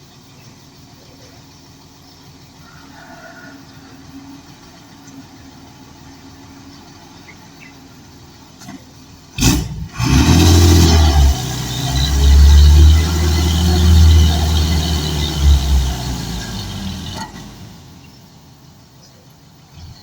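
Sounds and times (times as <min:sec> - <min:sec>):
engine starting and running: 0:08.6 - 0:18.2.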